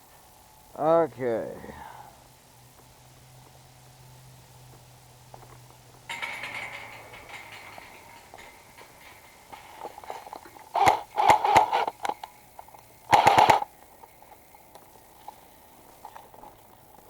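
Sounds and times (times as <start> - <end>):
airsoft gun firing bursts: 10.8 - 12.0, 13.1 - 13.7.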